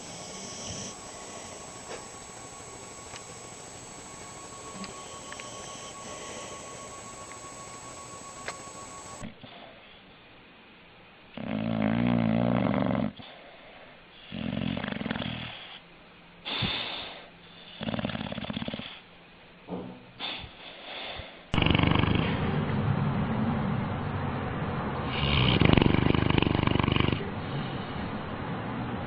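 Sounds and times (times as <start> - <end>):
dog snoring: 0.0 - 3.4, 4.6 - 7.1, 11.4 - 13.6, 14.2 - 15.8, 16.5 - 19.1, 20.2 - 22.8, 25.0 - 28.0.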